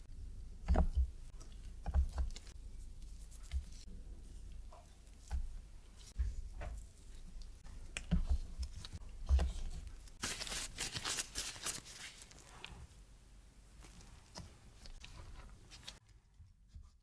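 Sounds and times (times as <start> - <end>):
dough soft thumps and taps: 4.5 - 10.0
crisp rustling and crinkling: 5.0 - 12.9.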